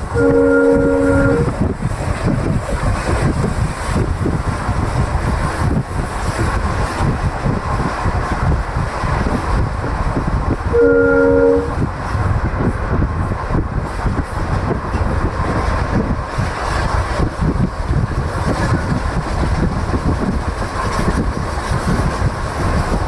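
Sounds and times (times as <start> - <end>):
train wheels rumbling on track: 0.0 - 23.0
locomotive horn chord: 0.1 - 1.6, 10.8 - 11.8.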